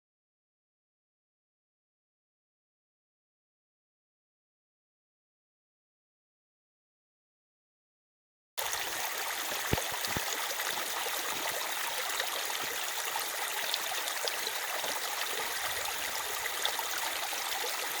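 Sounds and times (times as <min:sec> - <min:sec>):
mountain stream rushing: 0:08.6 - 0:18.0.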